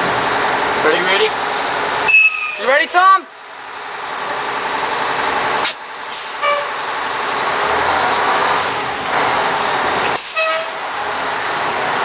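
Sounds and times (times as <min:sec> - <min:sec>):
fire engine running: 0:00.0 - 0:12.0
short beeps: 0:02.1 - 0:02.6.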